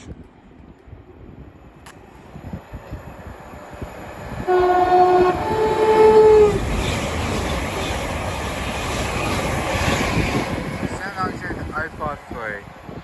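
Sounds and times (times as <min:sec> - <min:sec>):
train rushing through station: 0:00.0 - 0:13.0
train two-tone horn: 0:04.4 - 0:06.6.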